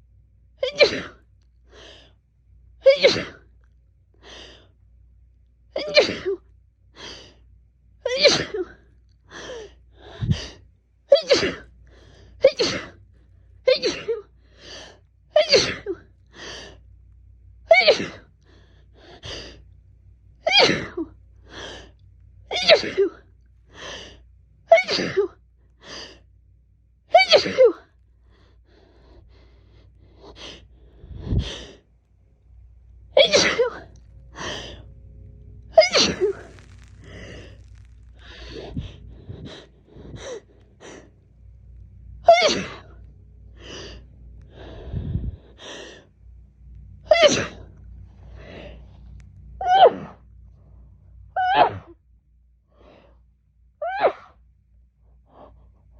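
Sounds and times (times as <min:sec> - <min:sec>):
woman sneezing: 0:00.6 - 0:01.2, 0:05.8 - 0:06.4, 0:08.1 - 0:08.7, 0:15.4 - 0:16.0, 0:27.2 - 0:27.8, 0:33.2 - 0:33.8, 0:35.8 - 0:36.5, 0:51.4 - 0:52.0
gasping breaths: 0:28.2 - 0:31.9, 0:36.2 - 0:41.2, 0:42.8 - 0:46.1.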